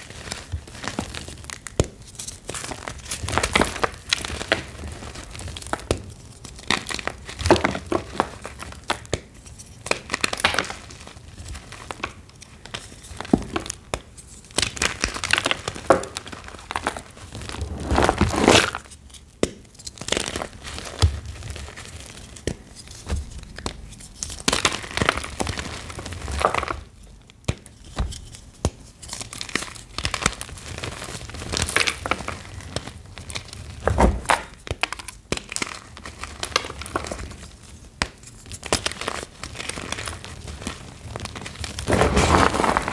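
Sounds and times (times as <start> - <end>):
chalk blocks crushed and crumbling: 41.4 - 42.9.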